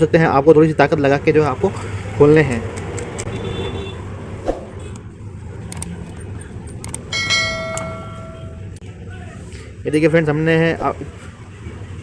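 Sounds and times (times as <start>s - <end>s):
metal piece ringing: 7.1s - 8.8s.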